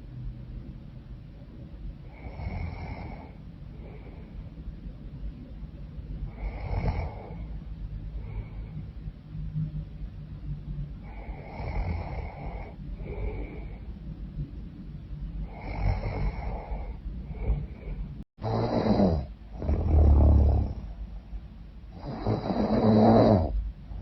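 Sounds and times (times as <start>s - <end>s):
woman snoring: 2.1s - 4.1s, 6.3s - 7.5s, 11.0s - 13.8s, 15.5s - 20.9s, 21.9s - 23.6s.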